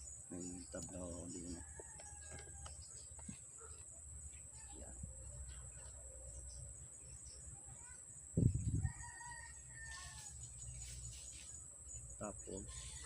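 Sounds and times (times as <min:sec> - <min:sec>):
rooster crowing: 0:01.5 - 0:02.8, 0:08.8 - 0:10.5, 0:12.6 - 0:13.0.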